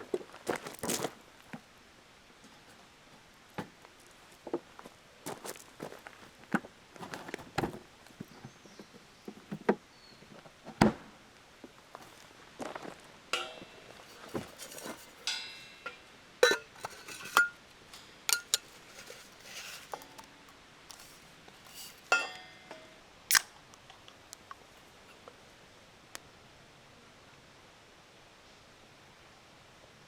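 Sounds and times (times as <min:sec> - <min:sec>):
small hard objects clinking: 0:13.4 - 0:23.4.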